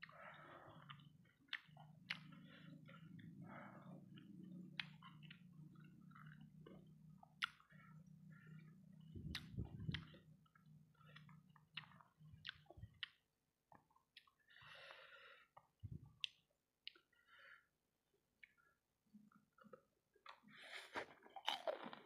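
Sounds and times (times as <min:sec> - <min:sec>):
person chewing food: 0:00.0 - 0:14.6, 0:15.5 - 0:17.2, 0:18.4 - 0:22.0
low hum: 0:02.0 - 0:13.0.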